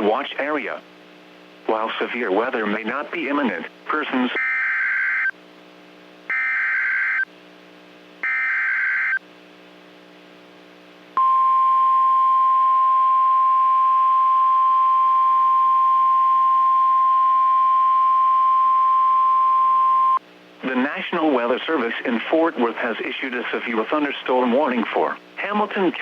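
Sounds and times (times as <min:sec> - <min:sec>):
steady warning alarm tone: 0:06.3 - 0:07.3, 0:08.2 - 0:09.2.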